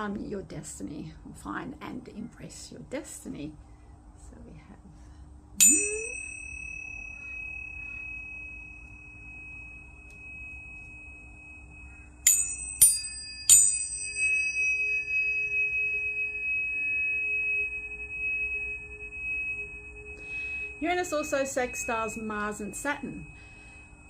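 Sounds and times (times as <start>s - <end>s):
tuning fork strikes: 5.6s - 24.0s
tuning forks ringing: 5.6s - 24.0s.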